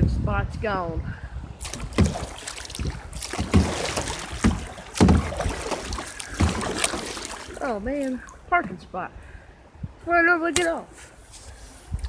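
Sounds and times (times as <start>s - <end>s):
moving water: 1.2s - 12.0s
paddle strokes splashing: 1.6s - 8.8s.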